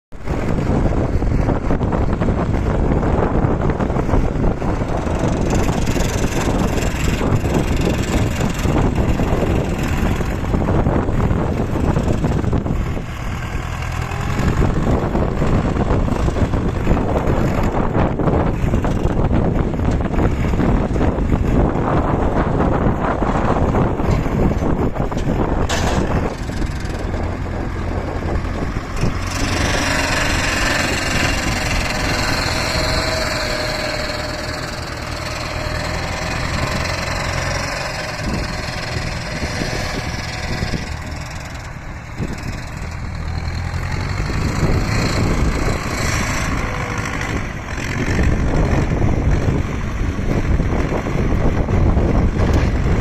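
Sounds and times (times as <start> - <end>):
tractor diesel engine running: 0.1 - 53.0.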